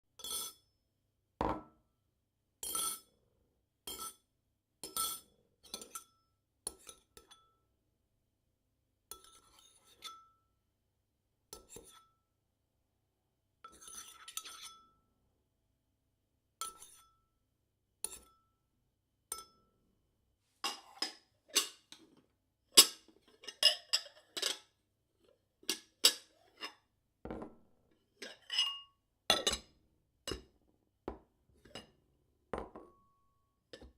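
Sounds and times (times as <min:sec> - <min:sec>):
bowls clattering on wooden table: 0:32.6 - 0:33.0.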